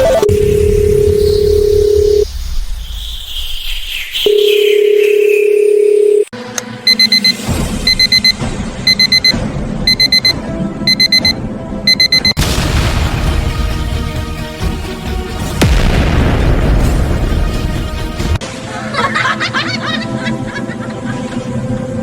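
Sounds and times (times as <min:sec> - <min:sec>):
digital alarm clock beeping: 0:00.0 - 0:02.2, 0:06.9 - 0:11.3, 0:11.9 - 0:12.4
loud blast of noise: 0:00.3 - 0:03.8, 0:12.4 - 0:18.7.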